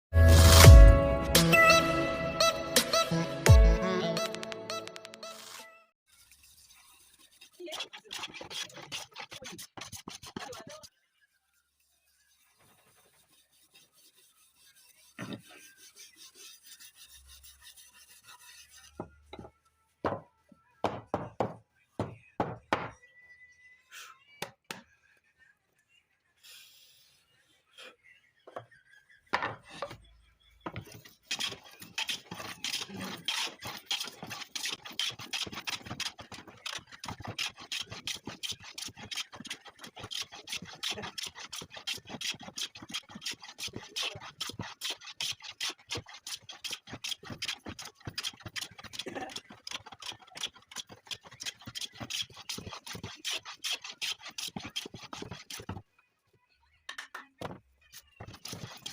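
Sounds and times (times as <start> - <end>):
hand tool scraping wood: 6.4 - 10.9, 12.4 - 19.1, 30.7 - 55.8, 58.0 - 58.9.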